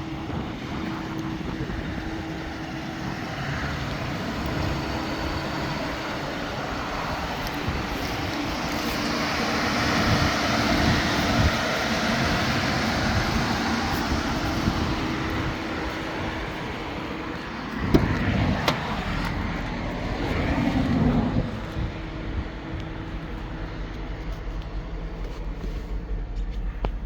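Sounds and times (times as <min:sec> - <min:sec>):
steady vehicle noise: 0:00.0 - 0:27.0
sharp thump: 0:17.8 - 0:18.8.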